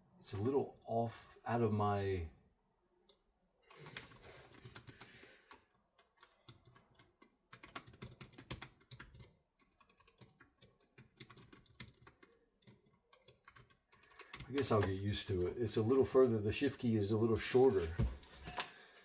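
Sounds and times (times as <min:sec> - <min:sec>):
keyboard typing: 0:03.1 - 0:15.1.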